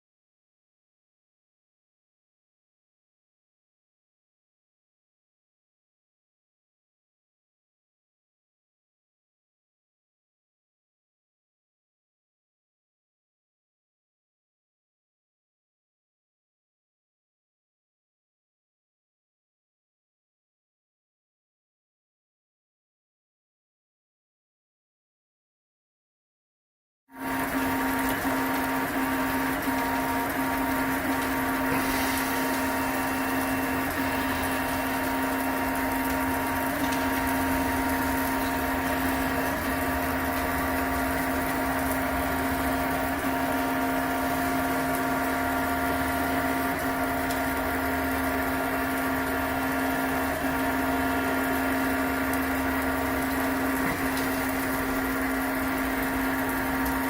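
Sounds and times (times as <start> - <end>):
printer humming and whining: 27.2 - 57.0.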